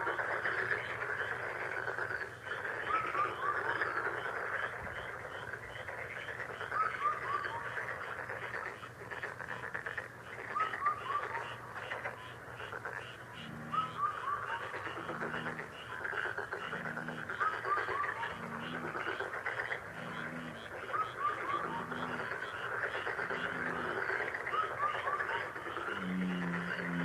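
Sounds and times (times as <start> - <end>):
frog chorus: 0.0 - 27.0
low frog croak: 0.0 - 27.0
quick falling frog calls: 0.0 - 27.0.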